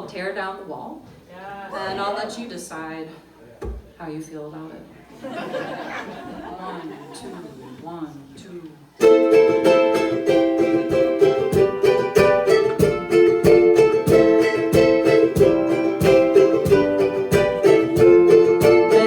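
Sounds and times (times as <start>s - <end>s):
strummed string instrument: 9.0s - 19.0s.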